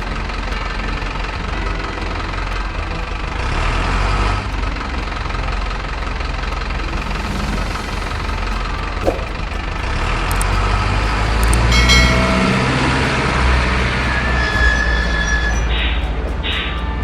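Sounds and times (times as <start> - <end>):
truck engine rumbling: 0.0 - 17.0
brief tone: 6.5 - 9.4, 11.4 - 16.8.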